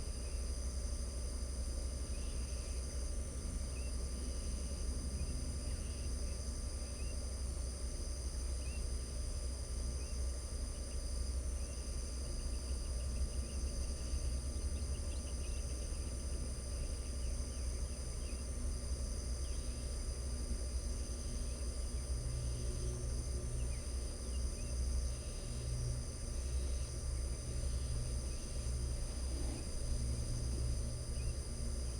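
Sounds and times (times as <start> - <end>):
night insects trilling: 0.1 - 31.9
steady low rumble: 23.0 - 31.9.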